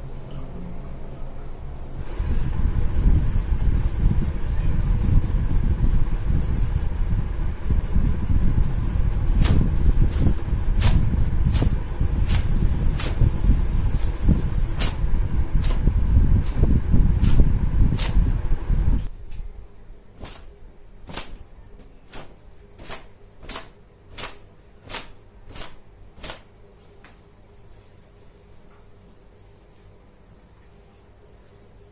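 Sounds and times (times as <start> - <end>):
towel rubbing hair: 7.8 - 15.8, 20.2 - 21.4, 22.1 - 26.5
towel slapping hair: 8.8 - 15.8, 16.4 - 18.2, 20.2 - 21.4, 22.1 - 26.5.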